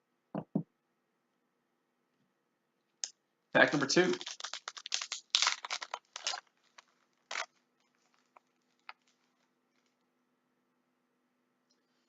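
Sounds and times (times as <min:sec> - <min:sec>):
card pack crinkling: 0:03.6 - 0:10.0.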